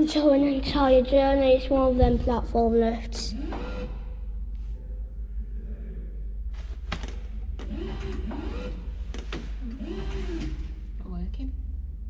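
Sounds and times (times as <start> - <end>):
steady low hum: 0.0 - 12.0
motor whines: 7.5 - 10.9.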